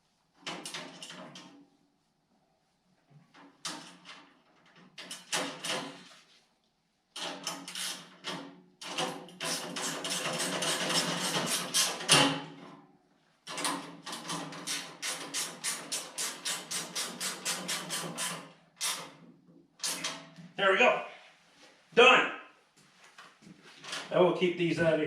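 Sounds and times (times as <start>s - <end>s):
ratchet wrench clicking: 14.7s - 19.0s.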